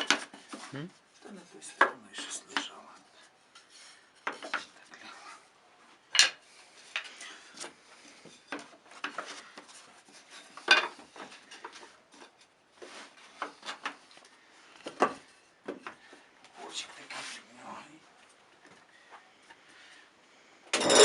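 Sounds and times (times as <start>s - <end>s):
wooden frames clattering and knocking: 0.0s - 2.1s, 4.1s - 4.9s, 6.0s - 14.2s, 14.8s - 16.3s.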